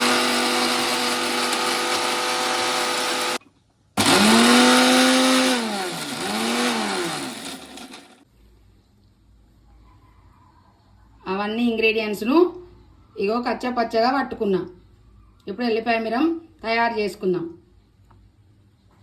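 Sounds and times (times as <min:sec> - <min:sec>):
mixer grinder whirring: 0:00.0 - 0:03.4, 0:04.0 - 0:08.2.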